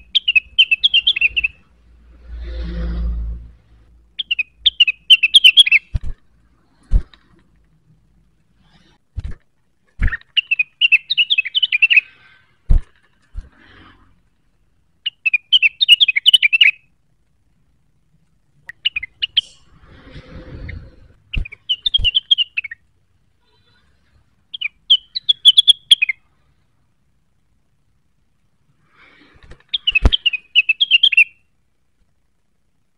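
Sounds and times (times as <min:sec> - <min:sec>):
songbird chattering: 0:00.0 - 0:01.6, 0:04.2 - 0:05.9, 0:10.1 - 0:12.2, 0:15.0 - 0:16.8, 0:18.7 - 0:19.6, 0:24.5 - 0:26.2, 0:29.7 - 0:31.4.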